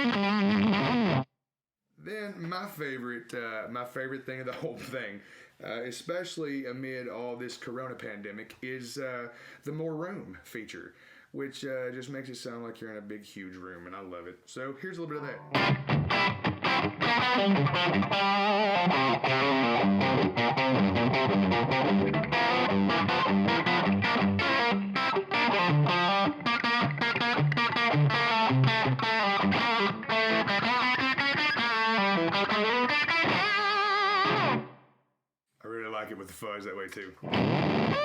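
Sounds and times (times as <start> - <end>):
distorted electric guitar picking: 0.0 - 1.2, 15.5 - 34.8, 37.2 - 38.0.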